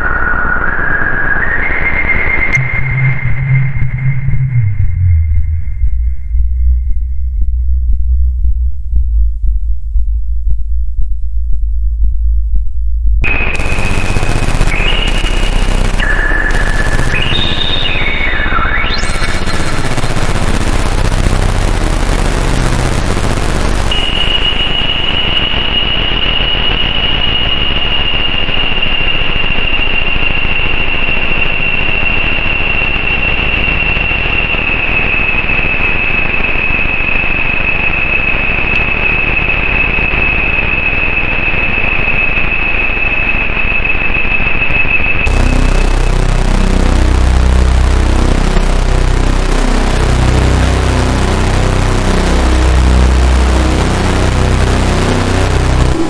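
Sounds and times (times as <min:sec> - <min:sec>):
piercing alarm-like tone: 0:02.0 - 0:30.9, 0:38.9 - 0:56.0
low rumble: 0:02.5 - 0:25.1, 0:45.3 - 0:56.0
dense synthesizer hiss: 0:02.6 - 0:25.7, 0:45.3 - 0:56.0.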